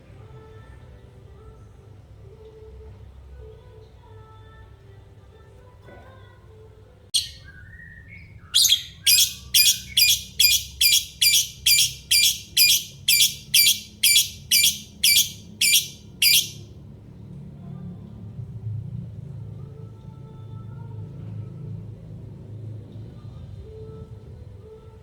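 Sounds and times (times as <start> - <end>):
lovebird calling: 7.2 - 7.6, 8.6 - 16.6.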